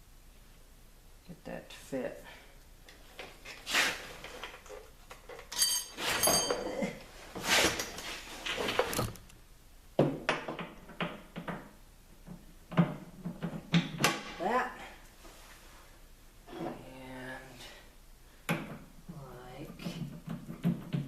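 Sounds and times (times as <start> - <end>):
metal tools clanking and scraping: 4.3 - 6.9
short metallic rings: 5.5 - 6.7.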